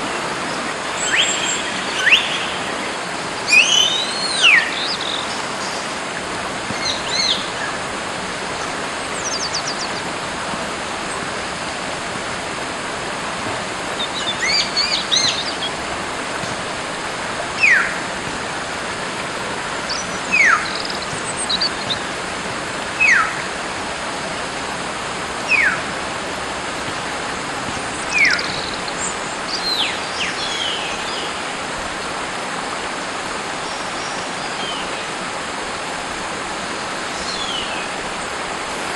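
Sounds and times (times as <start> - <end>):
stream rushing: 0.0 - 38.9
bird trill: 1.0 - 2.6.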